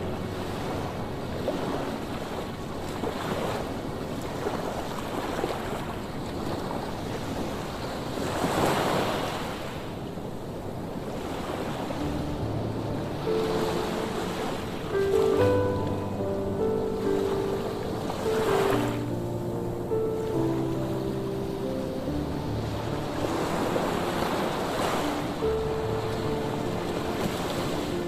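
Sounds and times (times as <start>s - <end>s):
soft background music: 0.0s - 6.3s, 10.2s - 28.0s
waves washing onto stony shore: 22.4s - 28.0s.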